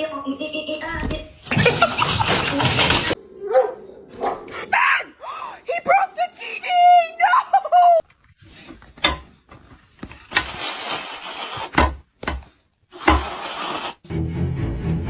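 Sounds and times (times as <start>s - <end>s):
sharp knocks: 9.0s - 9.3s, 11.8s - 12.5s, 13.1s - 13.4s
music: 14.1s - 15.0s.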